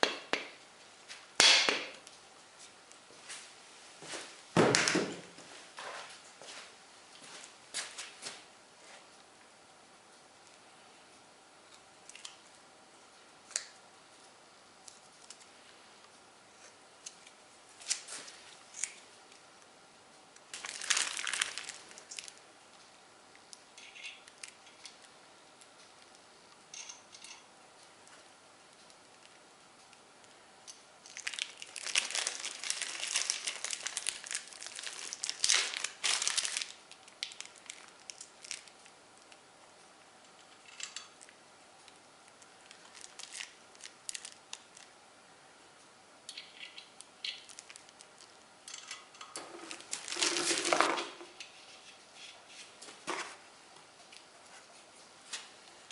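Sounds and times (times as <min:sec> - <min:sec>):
packaging crinkling and rustling: 0:20.5 - 0:22.4, 0:31.1 - 0:38.9, 0:42.6 - 0:44.9, 0:47.3 - 0:48.4, 0:49.3 - 0:51.4.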